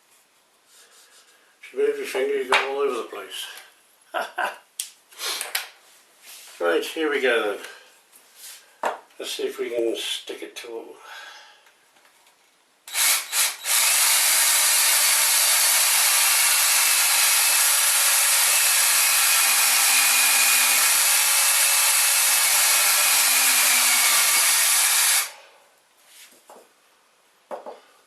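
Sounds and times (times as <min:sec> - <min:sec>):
cordless drill running: 0:12.9 - 0:25.4.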